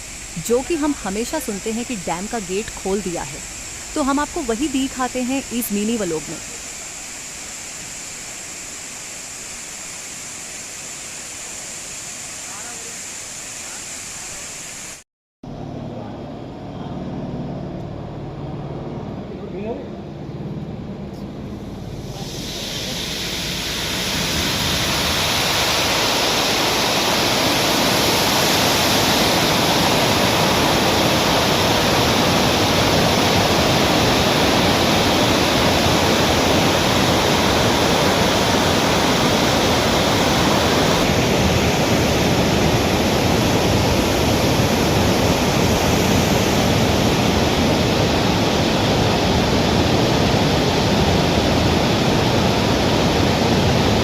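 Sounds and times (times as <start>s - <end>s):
water rushing and churning: 21.6s - 54.0s.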